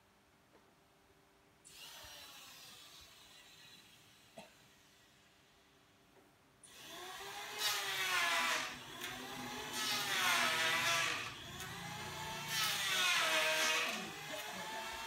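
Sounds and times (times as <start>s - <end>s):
power sander on wood: 6.7s - 15.0s.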